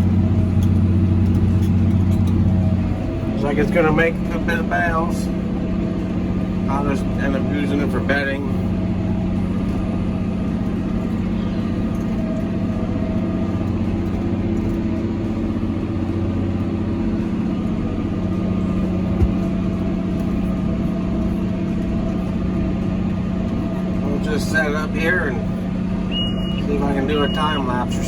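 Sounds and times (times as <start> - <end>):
tractor engine humming: 0.0 - 28.0
short knock: 19.1 - 19.6.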